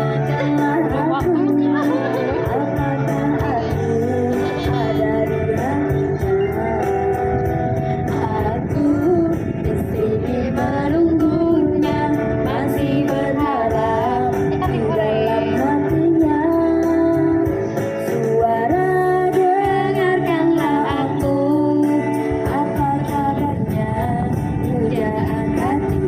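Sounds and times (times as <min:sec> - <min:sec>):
guitar: 0:00.0 - 0:26.0
woman singing: 0:00.0 - 0:26.0.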